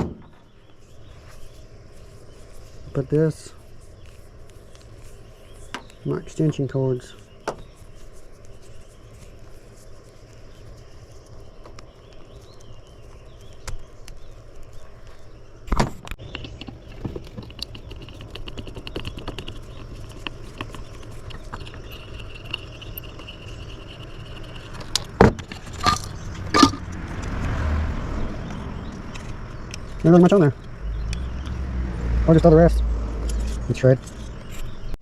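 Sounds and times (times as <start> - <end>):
sharp knocks: 0.0 - 0.4.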